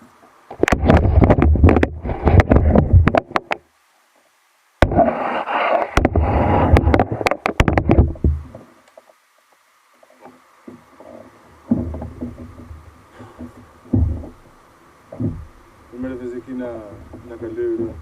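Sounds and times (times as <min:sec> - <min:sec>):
knocks and bumps on microphone: 0:00.6 - 0:03.6, 0:05.8 - 0:08.7, 0:10.6 - 0:14.5, 0:15.1 - 0:15.6.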